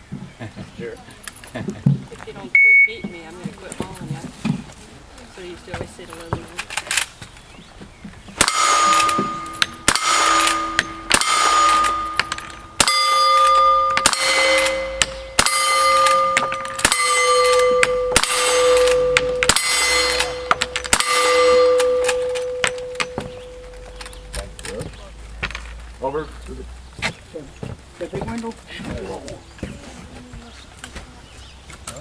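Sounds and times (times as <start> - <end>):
gunshots: 8.4 - 23.8
steel target ringing: 8.4 - 24.7.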